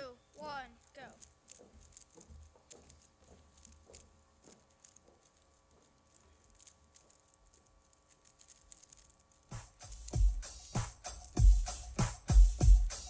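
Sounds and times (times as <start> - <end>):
plastic puzzle cubes clicking: 0.4 - 10.2.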